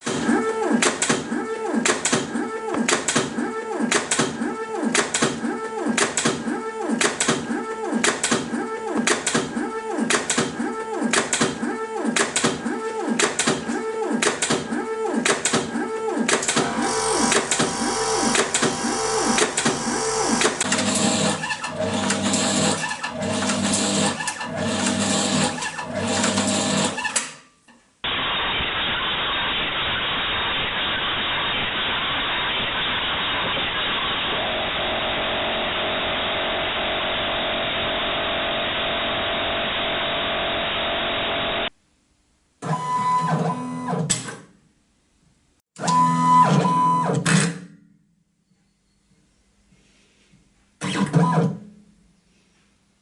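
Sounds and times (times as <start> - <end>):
tape cutting machine motor whine: 16.5 - 26.8
steady machine hum: 16.6 - 22.7.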